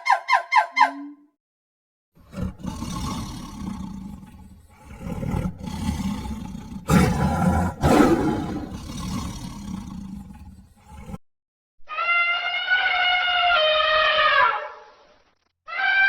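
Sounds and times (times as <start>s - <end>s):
big cat roaring and growling: 2.2s - 11.2s.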